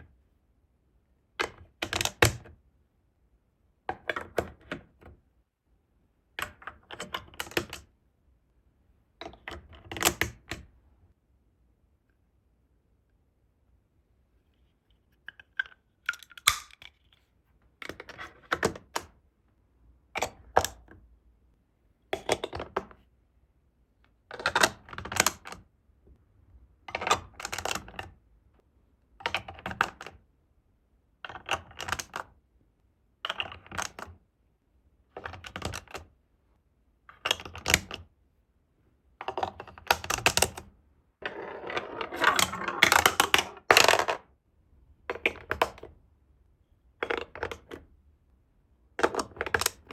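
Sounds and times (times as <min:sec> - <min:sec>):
marbles clattering through plastic track: 0:41.2 - 0:44.2.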